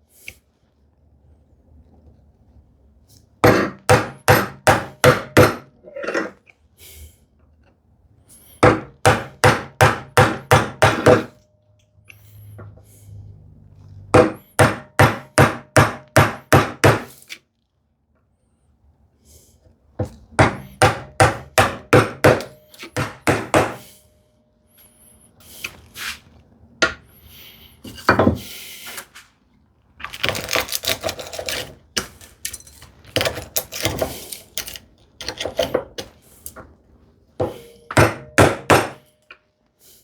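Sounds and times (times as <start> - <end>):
mallet striking chisel: 3.4 - 5.7, 8.6 - 11.4, 14.2 - 17.1, 20.4 - 23.8, 37.4 - 39.0
chisel scraping wood: 30.1 - 32.4, 33.1 - 35.7.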